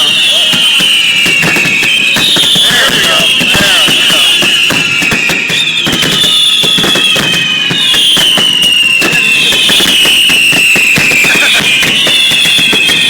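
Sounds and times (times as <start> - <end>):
fireworks bangs and crackling: 0.0 - 13.0
high whistling tone: 0.0 - 13.0.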